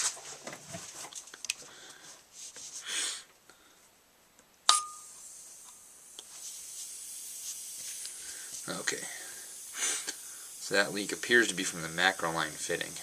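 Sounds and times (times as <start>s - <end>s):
gas hissing from leak: 4.8s - 13.0s.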